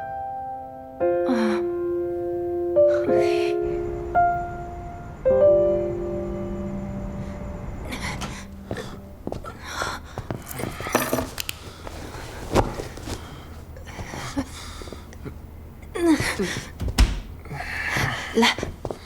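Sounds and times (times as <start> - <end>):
heavy breathing: 7.3 - 12.4, 13.1 - 15.4
clothes rustling: 8.7 - 15.1
knocks: 16.8 - 17.4.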